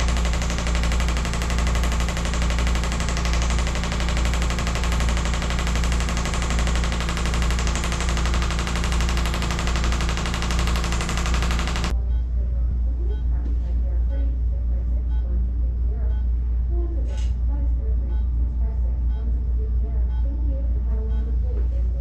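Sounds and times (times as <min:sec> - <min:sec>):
fast sharp tapping: 0:00.0 - 0:11.9
low hum: 0:00.0 - 0:22.0.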